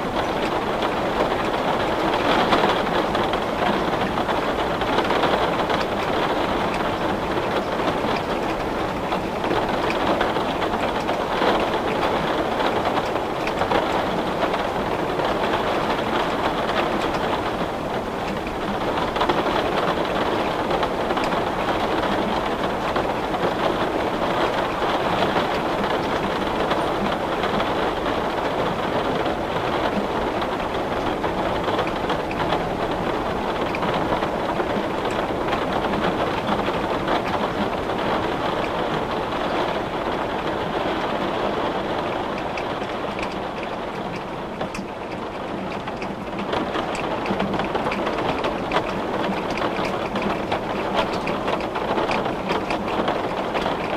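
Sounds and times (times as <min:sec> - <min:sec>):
heavy rain on glass: 0:00.0 - 0:53.9.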